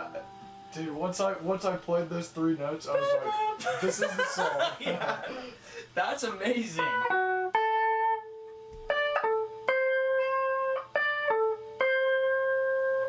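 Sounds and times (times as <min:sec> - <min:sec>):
simple instrumental melody: 0:06.8 - 0:13.0.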